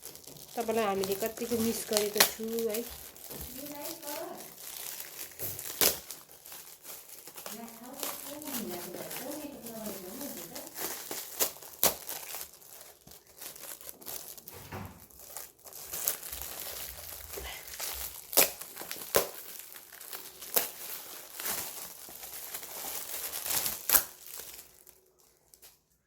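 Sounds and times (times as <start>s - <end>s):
gift wrapping crinkling and tearing: 0.0s - 26.0s.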